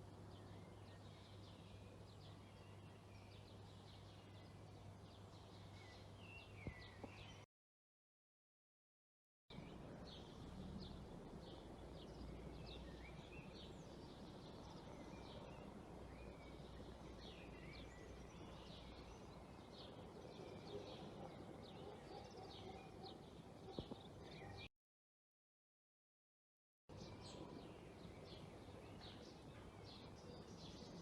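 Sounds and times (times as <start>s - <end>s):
small birds chirping: 0.0s - 7.5s, 9.5s - 24.7s, 26.9s - 31.0s.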